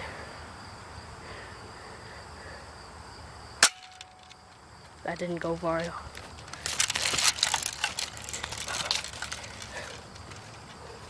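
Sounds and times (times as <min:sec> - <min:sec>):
crunching and crackling: 0:03.6 - 0:11.0.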